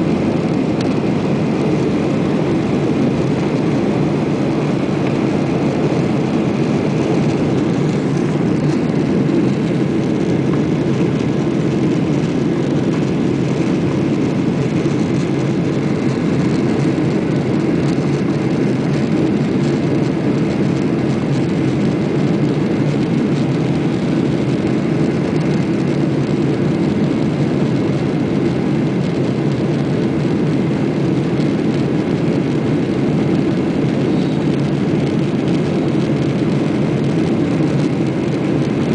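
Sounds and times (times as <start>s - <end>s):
jet engines roaring on takeoff: 0.0s - 38.9s.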